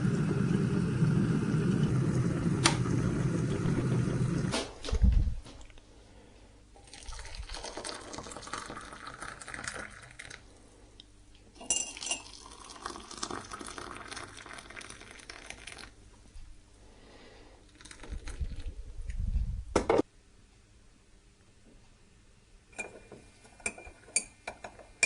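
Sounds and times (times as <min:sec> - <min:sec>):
water being poured: 0:06.8 - 0:10.4, 0:11.9 - 0:15.9, 0:17.8 - 0:18.7
crockery clinking: 0:11.6 - 0:12.4.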